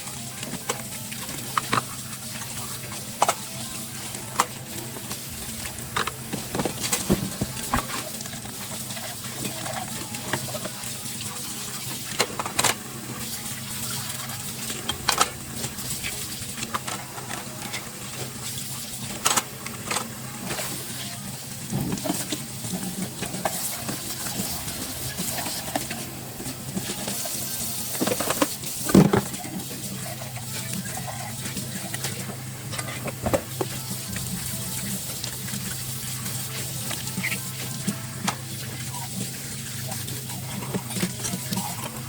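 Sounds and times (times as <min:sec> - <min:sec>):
dishes and utensils clinking: 0:00.4 - 0:10.8.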